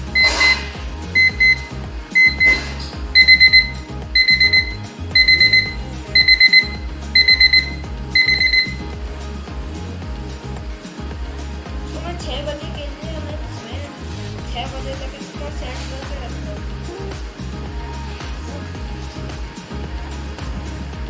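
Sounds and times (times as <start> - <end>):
alarm clock beeping: 0.0 - 8.9.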